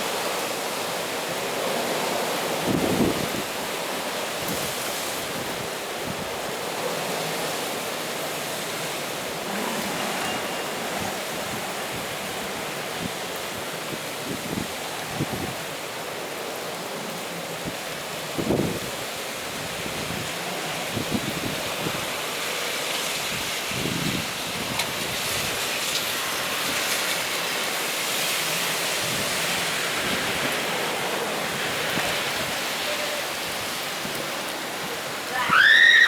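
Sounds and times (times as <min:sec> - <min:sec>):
rain: 0:00.0 - 0:36.0
stormy wind: 0:00.0 - 0:36.0
wind buffeting microphone: 0:02.6 - 0:03.8, 0:04.4 - 0:15.8, 0:17.7 - 0:27.7.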